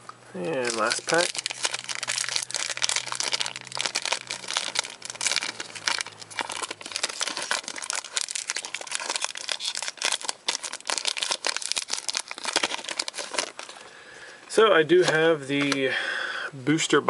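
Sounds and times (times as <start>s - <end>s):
foil wrapper crinkling and tearing: 0.4s - 13.8s.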